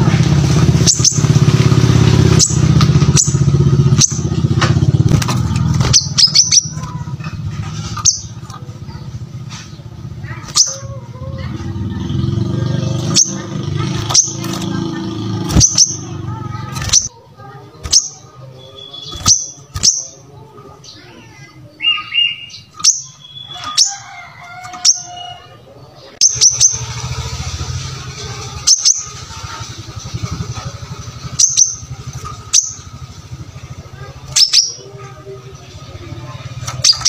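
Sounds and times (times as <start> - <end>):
bird chirping sharply: 0.7 - 1.4, 2.2 - 4.4, 5.4 - 11.0, 11.6 - 17.1, 17.8 - 24.2, 24.8 - 27.3, 28.6 - 29.2, 31.2 - 33.0, 34.2 - 34.9, 36.6 - 37.0
bird twittering: 0.7 - 1.6, 2.2 - 27.2, 28.4 - 37.0.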